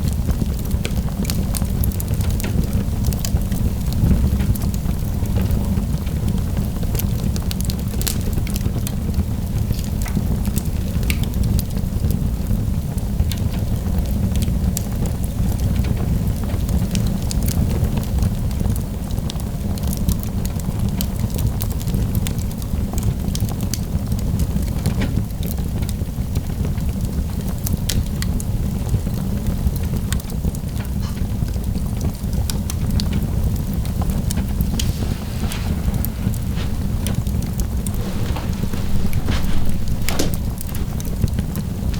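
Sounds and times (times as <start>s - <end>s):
wood fire crackling: 0.0s - 12.2s, 31.9s - 41.9s.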